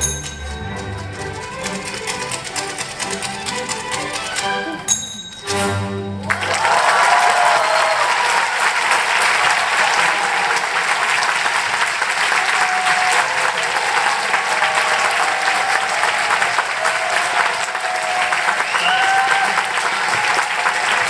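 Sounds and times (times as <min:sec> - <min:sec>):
audience applauding: 0:00.0 - 0:04.9, 0:06.2 - 0:21.0
music: 0:00.0 - 0:06.6.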